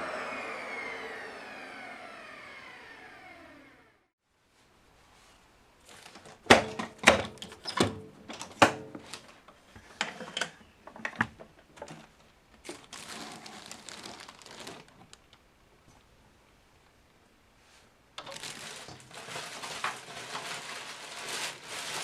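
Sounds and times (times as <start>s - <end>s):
crinkling rustle: 4.6s - 6.5s, 8.3s - 16.2s, 17.7s - 22.0s.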